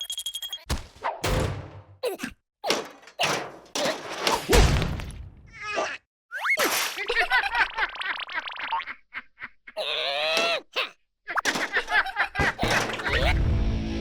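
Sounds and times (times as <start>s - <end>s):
cartoon thuds and whacks: 0.7s - 2.0s.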